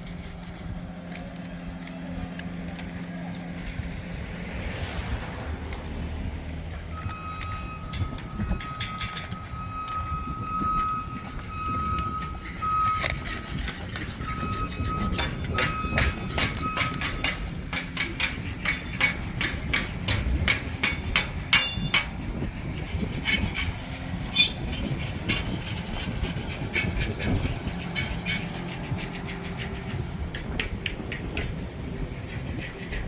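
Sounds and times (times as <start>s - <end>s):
truck engine running: 5.1s - 33.0s
reversing beeper: 6.9s - 13.3s, 14.2s - 17.3s.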